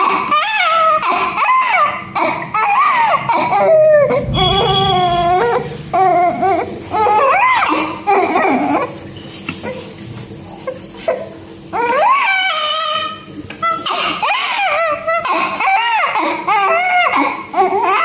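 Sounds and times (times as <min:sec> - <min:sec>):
newborn baby crying: 0:11.8 - 0:18.0.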